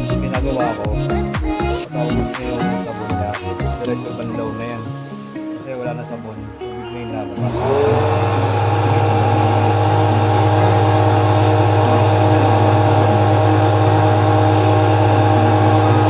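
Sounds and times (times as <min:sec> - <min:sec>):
electric pressure washer running: 0:07.4 - 0:16.0.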